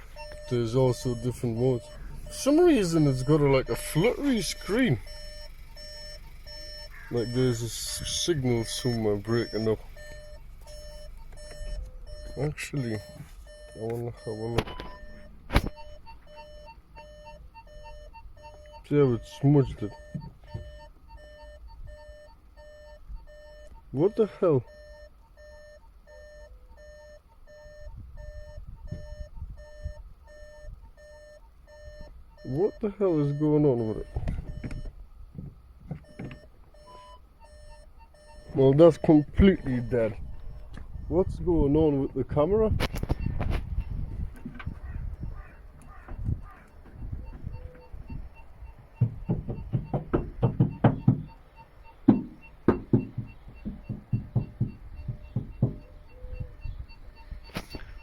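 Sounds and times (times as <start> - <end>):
low bumps: 0.0 - 22.3, 33.2 - 58.0
parking sensor beeps: 0.0 - 58.0
hand knocking on car panel: 49.0 - 51.4, 52.1 - 56.0.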